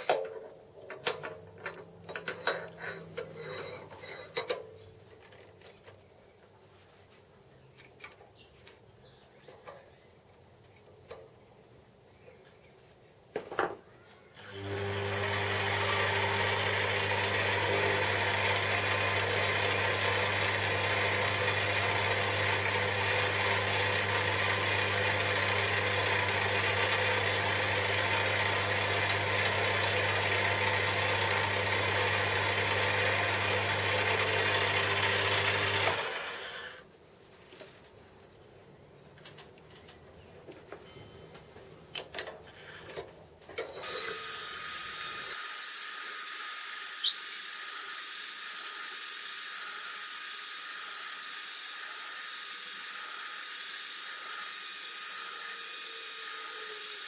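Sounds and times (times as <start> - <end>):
lathe motor humming and whirring: 14.4 - 36.6.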